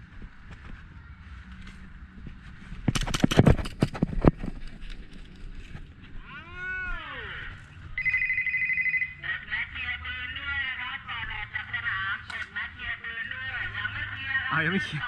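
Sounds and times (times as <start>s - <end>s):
steady high beep: 8.0s - 9.2s.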